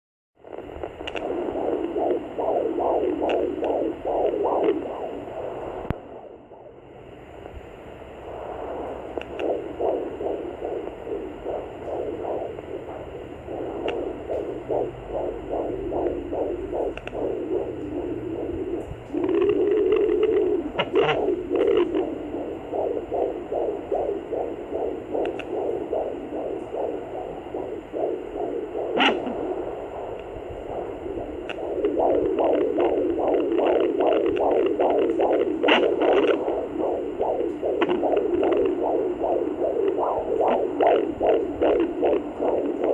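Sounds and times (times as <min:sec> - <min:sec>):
fetal heartbeat whoosh: 0:00.4 - 0:42.9
scratchy crackles: 0:09.2 - 0:42.9.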